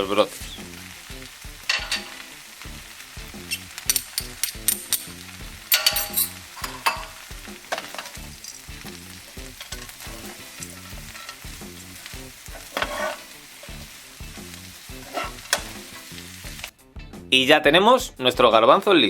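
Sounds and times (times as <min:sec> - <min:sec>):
food sizzling in frying pan: 0:00.0 - 0:16.8
utensil scraping pan: 0:05.7 - 0:08.2, 0:09.6 - 0:11.6, 0:12.4 - 0:13.9, 0:14.9 - 0:16.7.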